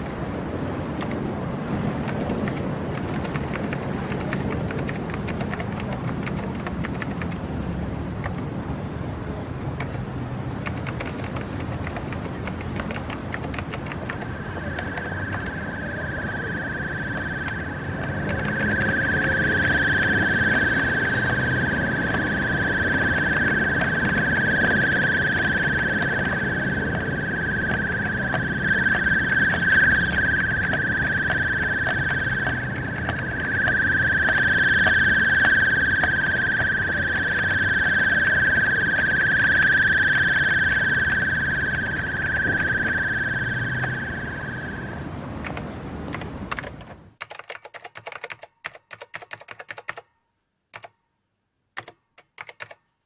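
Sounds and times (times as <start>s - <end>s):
sharp keyboard-like clicks: 1.0s - 1.2s, 2.0s - 7.4s, 9.8s - 15.6s, 17.1s - 21.5s, 22.1s - 43.0s, 45.4s - 50.1s, 50.7s - 51.0s, 51.8s - 52.8s
rushing noise with clicks: 1.9s - 7.4s, 9.8s - 44.8s
high whistling tone: 10.7s - 46.8s.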